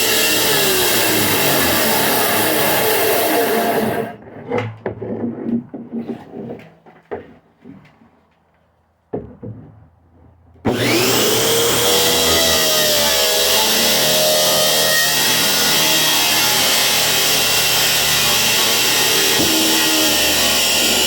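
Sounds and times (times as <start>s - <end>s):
wooden knocks and scrapes: 4.2s - 8.4s, 9.1s - 10.5s.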